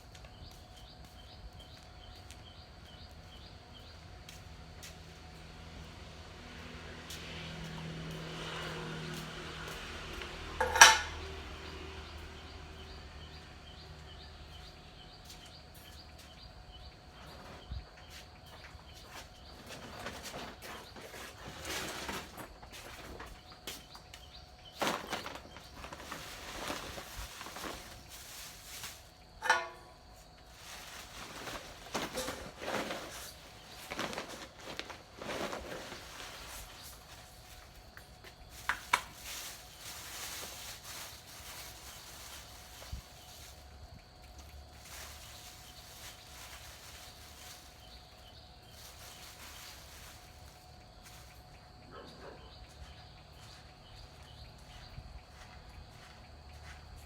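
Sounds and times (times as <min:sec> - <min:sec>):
metallic clanks and knocks: 0:10.6 - 0:11.3, 0:29.4 - 0:30.0.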